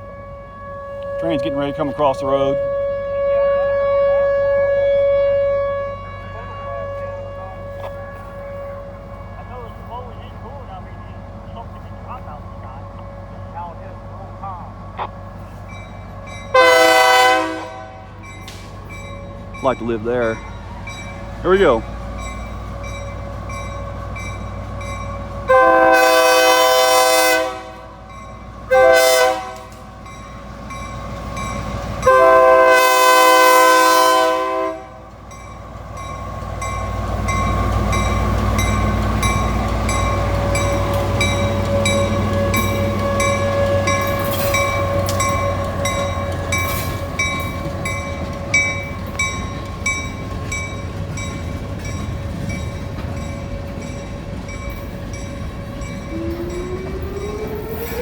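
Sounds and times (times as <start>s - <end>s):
locomotive horn blasts: 0.0s - 10.1s, 16.5s - 18.6s, 25.4s - 30.1s, 31.8s - 35.1s, 38.8s - 49.0s
tornado siren steady tone: 0.0s - 10.4s, 14.8s - 19.5s, 21.9s - 58.0s
diesel locomotive rumbling: 0.0s - 58.0s
wheels clicking over rail joints: 35.0s - 58.0s.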